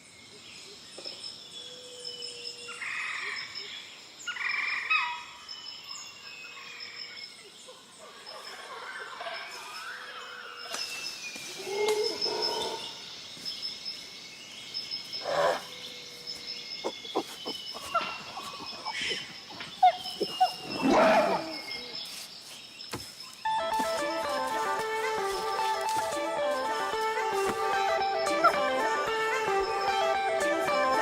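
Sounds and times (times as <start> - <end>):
birds whistling: 14.8 - 31.0
harsh animal calls: 15.2 - 15.9, 16.8 - 22.0.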